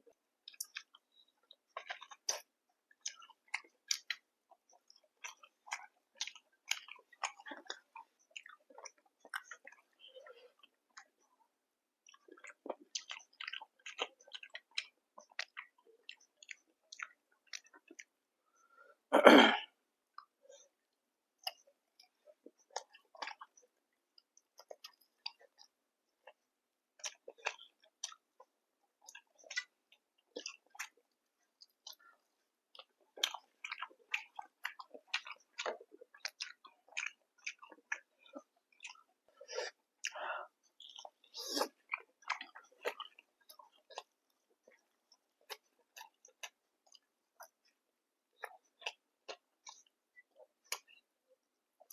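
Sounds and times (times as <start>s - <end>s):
wet chewing clicks and smacks: 0.1s - 11.4s, 12.0s - 18.2s, 21.4s - 51.9s
loud throat noise: 19.1s - 19.7s.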